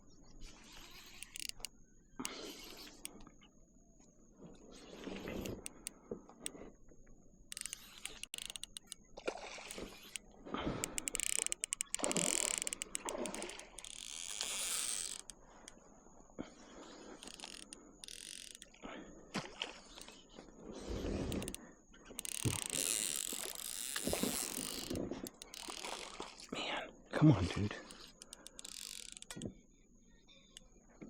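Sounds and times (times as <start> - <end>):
reel drag ratcheting: 0.4 - 3.3, 4.9 - 6.6, 7.5 - 15.8, 17.1 - 18.8, 20.9 - 26.5, 27.7 - 29.5
fishing reel cranking clicks: 0.6 - 3.3, 5.0 - 6.6, 7.5 - 9.0, 9.6 - 15.8, 17.2 - 18.7, 21.2 - 21.6, 22.2 - 26.0, 27.8 - 29.5.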